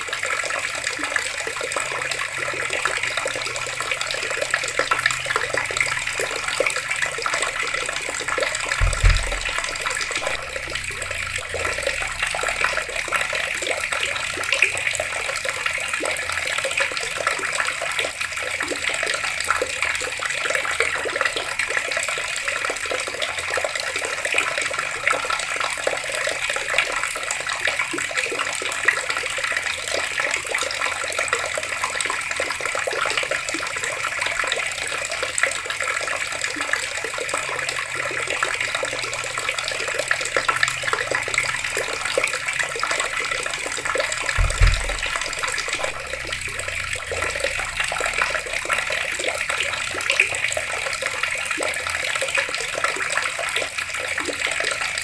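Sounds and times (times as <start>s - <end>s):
water running from taps: 0.0s - 55.0s
low thump: 8.8s - 12.4s, 44.4s - 47.7s.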